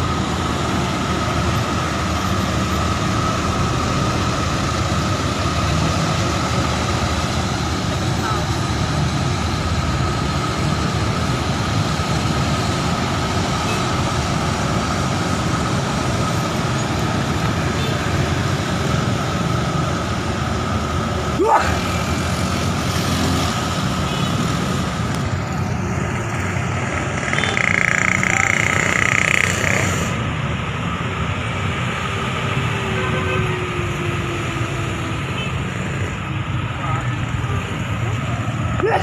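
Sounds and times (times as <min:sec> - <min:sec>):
excavator engine running: 0:00.0 - 0:30.4
constant hydraulic whine: 0:23.6 - 0:38.9.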